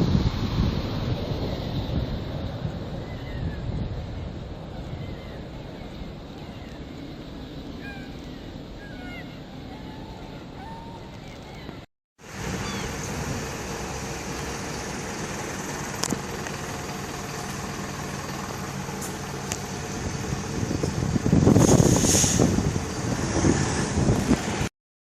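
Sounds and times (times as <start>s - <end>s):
traffic noise: 0.0s - 24.7s
vehicle engine running: 12.2s - 22.0s.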